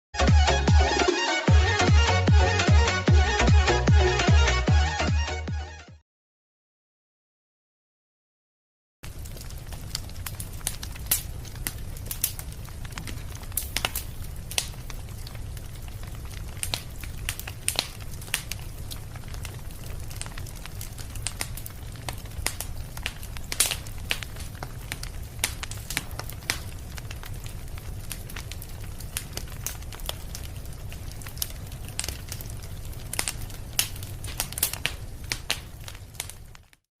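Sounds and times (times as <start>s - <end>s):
fire crackling and popping: 9.0s - 36.9s
fire rumbling: 9.0s - 36.9s.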